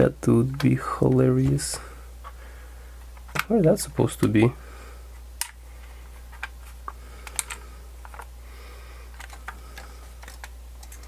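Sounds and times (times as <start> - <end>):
steady low hum: 0.0 - 11.0
plastic parts clicking and tapping: 3.1 - 4.4, 6.3 - 8.3, 9.1 - 11.0.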